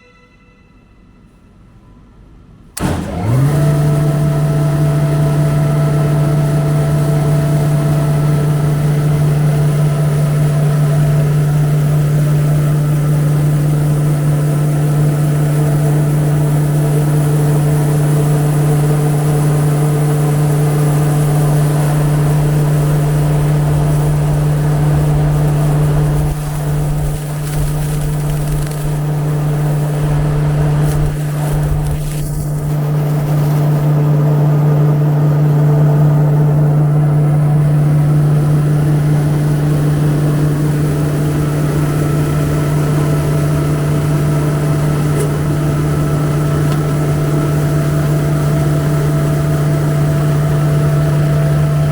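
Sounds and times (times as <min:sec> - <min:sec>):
machine running with loud hum: 0:02.4 - 0:51.9.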